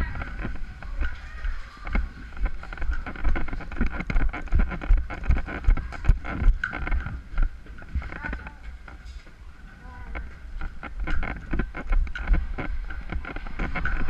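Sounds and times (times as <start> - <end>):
footsteps: 0.0 - 14.0
wind noise: 0.0 - 14.0
gear knocking against microphone: 1.8 - 9.0, 10.2 - 14.0.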